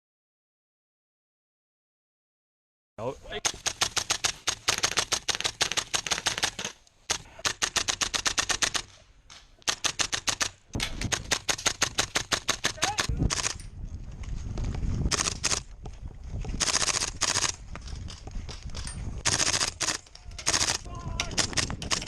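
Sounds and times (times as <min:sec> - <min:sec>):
airsoft rifle full-auto fire: 0:03.4 - 0:08.9, 0:09.7 - 0:13.6, 0:15.1 - 0:15.6, 0:16.6 - 0:17.6, 0:19.2 - 0:22.0.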